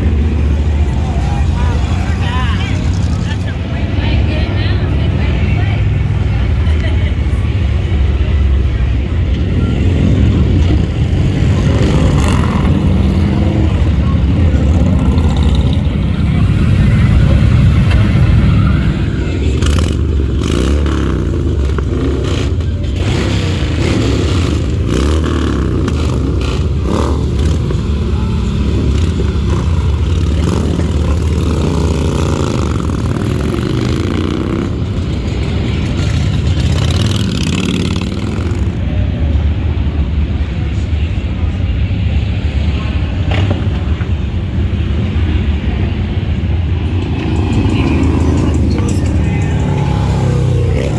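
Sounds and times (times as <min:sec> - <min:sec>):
motorcycle engines revving: 0:00.0 - 0:50.9.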